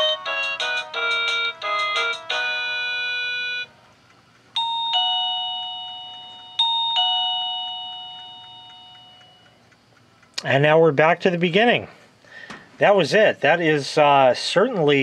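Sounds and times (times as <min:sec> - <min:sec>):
electronic doorbell melody: 0:00.0 - 0:03.8, 0:04.6 - 0:09.6
two-note ding-dong chime: 0:04.6 - 0:09.5.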